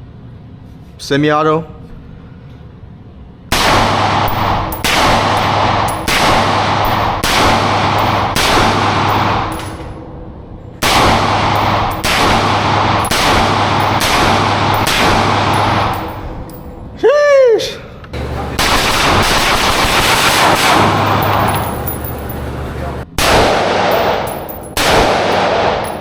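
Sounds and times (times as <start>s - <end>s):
gunshots with long echo: 3.5s - 10.2s, 10.8s - 16.6s, 18.2s - 26.0s.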